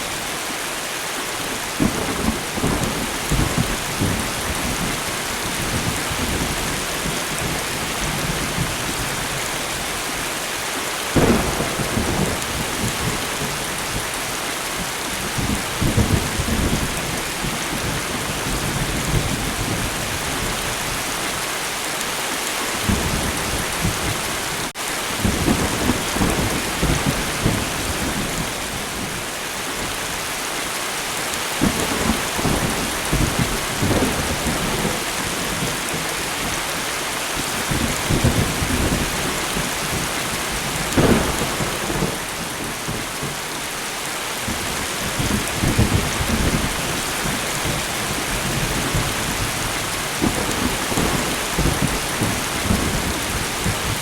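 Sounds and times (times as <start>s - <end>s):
light rain falling: 0.0s - 54.0s
thunder rumbling: 11.2s - 14.2s, 31.6s - 36.5s, 37.4s - 43.4s, 44.4s - 54.0s.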